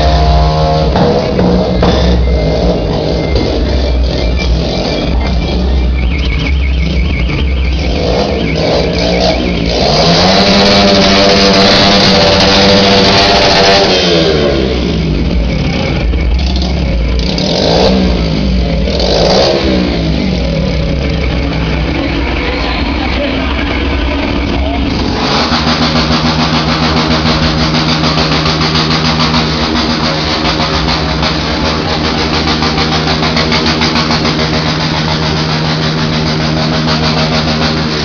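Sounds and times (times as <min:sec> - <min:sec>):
engine revving: 0:00.0 - 0:38.0
throttle blips: 0:01.6 - 0:10.4.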